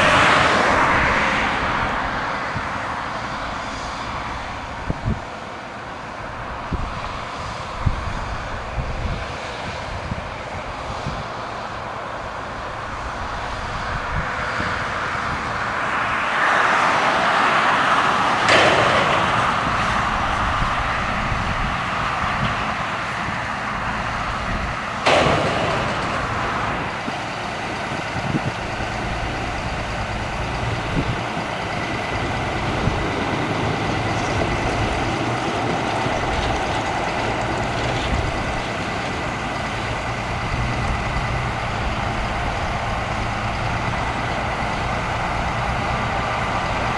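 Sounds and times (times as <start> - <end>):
diesel engine running: 0.0 - 46.9
sharp bangs: 18.4 - 21.1, 25.0 - 28.0
metal clanks: 18.5 - 20.6, 25.0 - 27.3.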